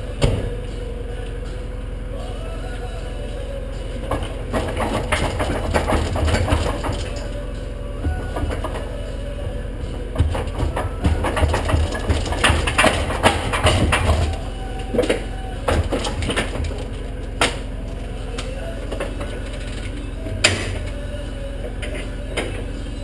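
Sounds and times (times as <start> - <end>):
engine idling: 0.0 - 23.0
metallic knocking and clatter: 10.2 - 14.4.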